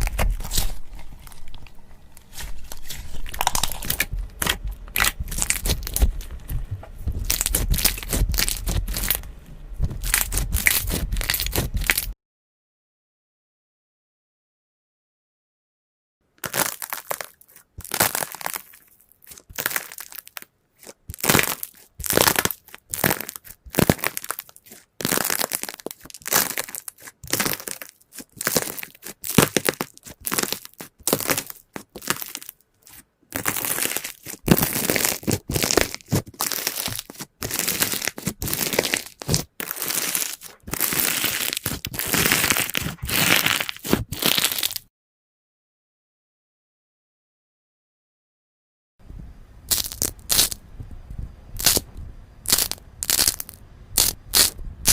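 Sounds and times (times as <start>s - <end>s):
slime being squeezed: 0.0s - 1.5s, 2.2s - 6.3s, 7.2s - 9.2s, 9.9s - 12.1s, 16.4s - 44.8s, 49.7s - 50.6s, 51.6s - 51.9s, 52.5s - 54.9s.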